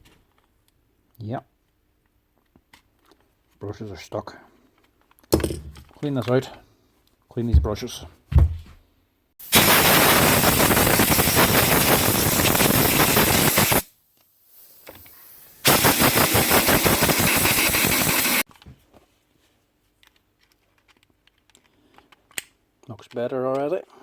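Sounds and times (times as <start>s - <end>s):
compressed air blow gun blasting: 9.4s - 13.9s, 14.6s - 18.4s.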